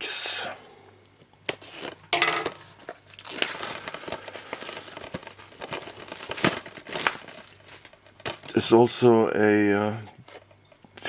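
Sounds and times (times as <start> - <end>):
packaging crinkling and rustling: 1.5 - 9.0.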